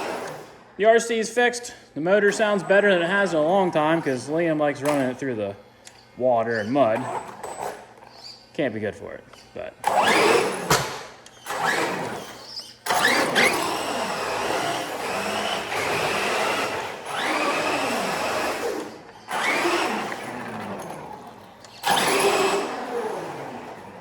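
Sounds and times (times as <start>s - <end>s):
rc car electric motor whining: 0.0s - 0.6s, 2.3s - 5.2s, 6.0s - 8.5s, 9.4s - 24.0s.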